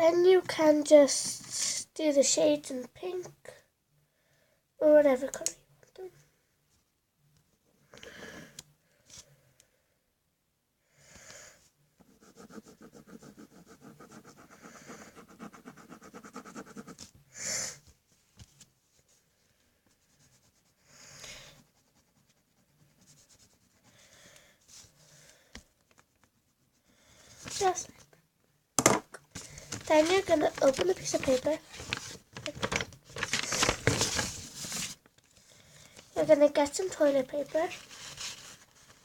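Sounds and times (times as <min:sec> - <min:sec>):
quiet breaths: 0:03.4 - 0:04.8, 0:07.6 - 0:10.2, 0:10.8 - 0:12.2, 0:14.0 - 0:15.6, 0:19.0 - 0:26.0, 0:26.6 - 0:28.2, 0:35.2 - 0:36.2
pencil colouring on paper: 0:12.0 - 0:17.1, 0:20.0 - 0:25.0.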